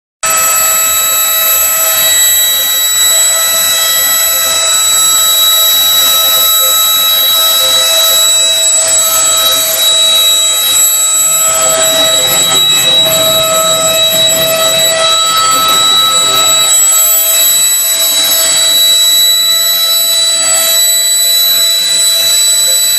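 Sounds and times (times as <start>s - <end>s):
router spindle high whine: 0.2s - 22.9s
low rumbling noise: 9.0s - 16.8s.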